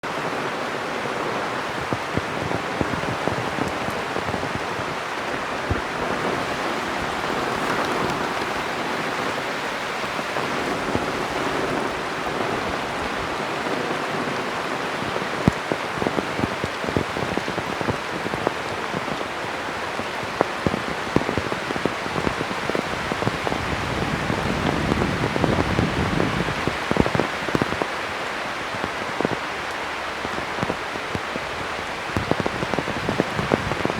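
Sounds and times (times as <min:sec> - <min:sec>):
heavy rain falling: 0:00.0 - 0:33.9.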